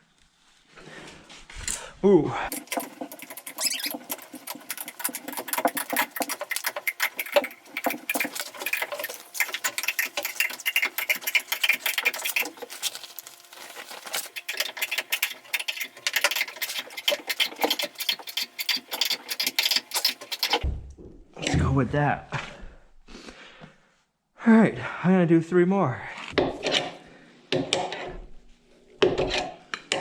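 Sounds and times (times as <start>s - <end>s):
tool clicking and rattling: 2.5s - 20.6s.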